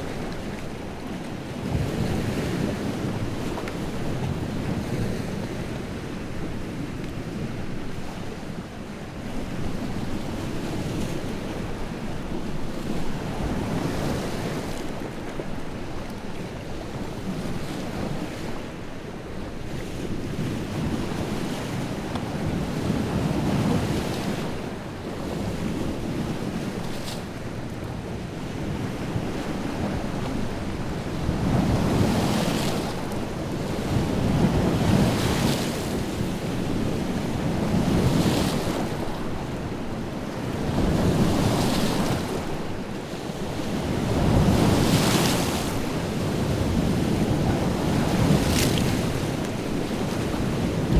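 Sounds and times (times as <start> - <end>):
waves breaking on shore: 28.9 - 50.9.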